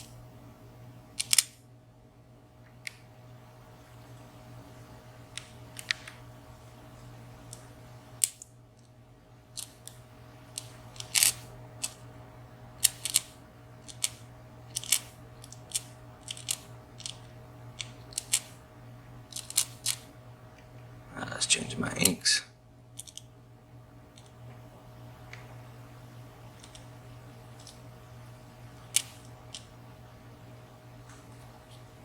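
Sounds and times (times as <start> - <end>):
low electrical hum: 0.0 - 32.0
small metal parts clicking: 1.2 - 1.6, 12.8 - 17.2, 19.3 - 20.0, 23.0 - 23.2.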